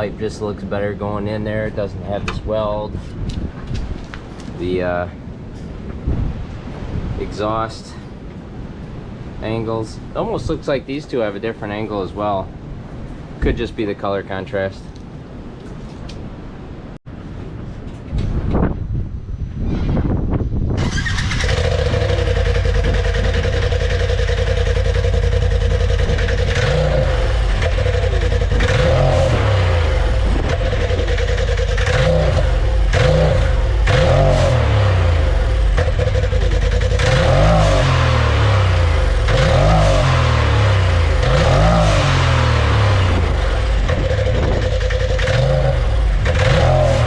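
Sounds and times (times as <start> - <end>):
engine starting and revving: 20.8 - 47.0.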